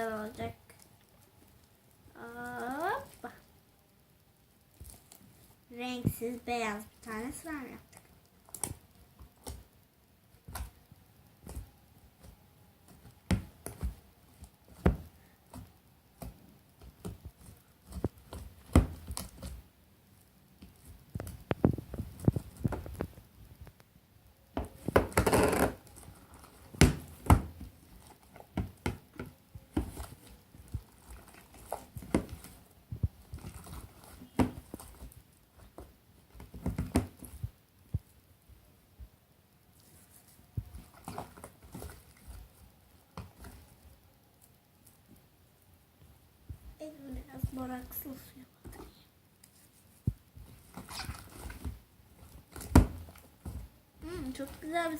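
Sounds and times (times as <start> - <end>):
slime squelching by hand: 29.7 - 35.7.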